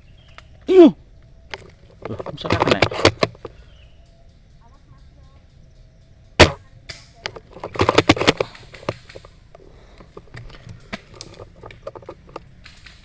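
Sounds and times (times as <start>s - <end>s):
clicks and rustling: 1.2s - 3.6s, 6.4s - 13.0s
sharp loud crack: 6.4s - 7.1s.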